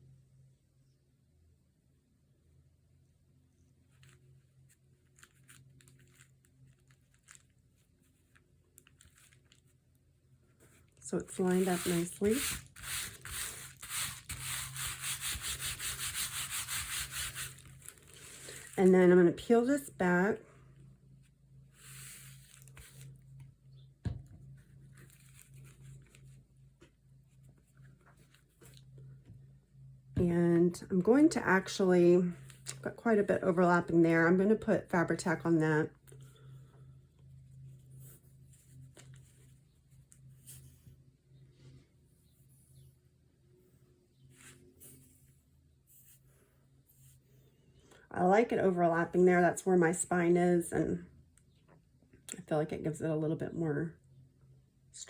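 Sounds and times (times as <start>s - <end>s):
low steady hum: 0.0s - 55.0s
fabric and paper rustling: 3.9s - 9.8s, 10.5s - 18.9s, 21.8s - 23.2s.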